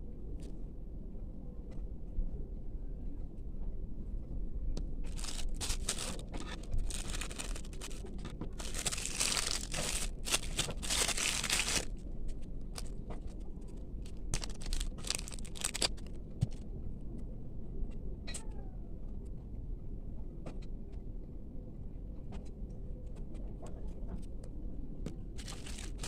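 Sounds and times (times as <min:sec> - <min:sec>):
packet tearing and crinkling: 0:05.1 - 0:12.0, 0:12.7 - 0:12.9, 0:14.1 - 0:16.6, 0:25.4 - 0:26.0.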